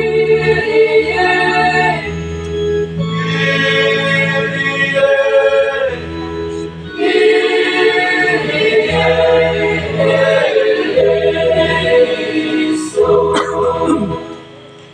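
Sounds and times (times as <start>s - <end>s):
mixed choir singing: 0.0s - 2.3s, 2.9s - 14.5s.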